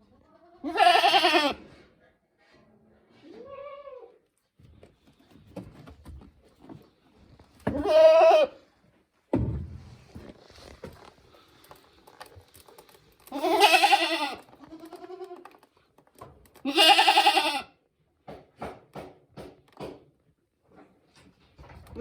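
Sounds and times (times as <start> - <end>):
goats bleating: 0.6 - 1.6, 7.7 - 8.6, 13.3 - 15.5, 16.6 - 17.7.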